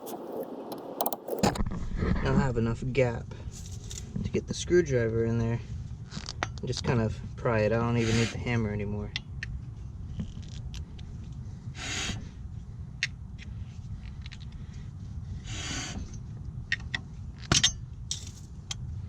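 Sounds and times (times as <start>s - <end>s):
screwdriver scraping metal: 8.0s - 8.5s.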